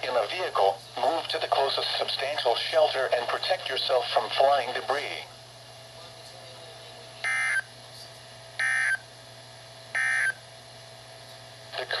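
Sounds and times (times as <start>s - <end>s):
buzzing digital data tones: 7.2s - 7.7s, 8.6s - 9.0s, 10.0s - 10.4s.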